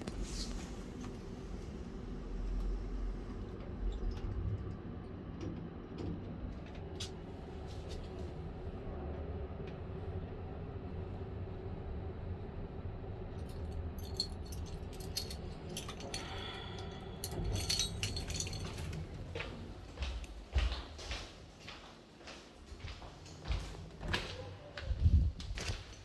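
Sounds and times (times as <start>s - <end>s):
metallic clinking and jingling: 13.4s - 19.4s.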